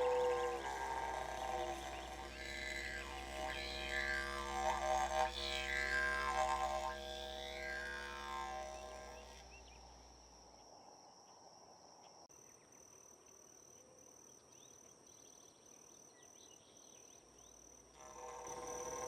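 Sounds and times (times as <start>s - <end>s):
music: 0.0s - 9.2s
insect drone: 0.0s - 19.0s.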